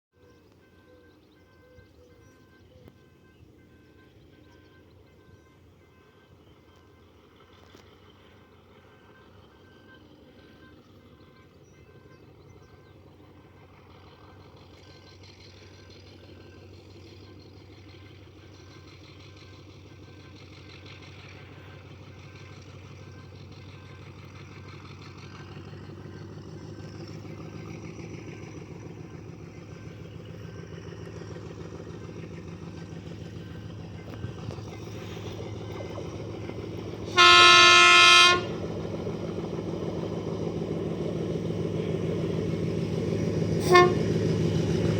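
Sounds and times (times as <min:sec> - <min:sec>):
locomotive engine rumble: 0:00.2 - 0:44.9
locomotive horn blast: 0:30.8 - 0:39.8, 0:43.2 - 0:44.9.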